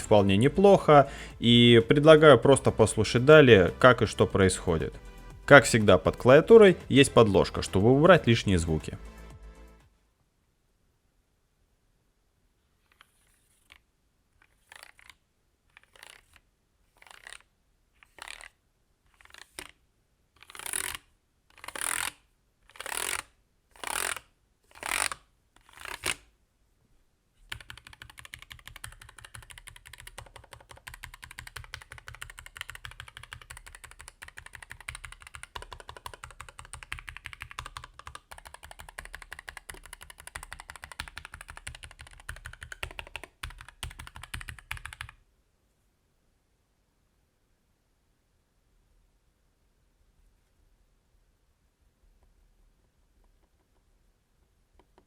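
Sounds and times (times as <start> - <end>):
fast typing on keyboard: 14.6 - 15.2, 15.8 - 16.4, 17.0 - 17.4, 18.0 - 18.5, 20.4 - 21.0, 21.6 - 22.1, 27.5 - 45.2
mechanical keyboard key presses: 27.5 - 45.2.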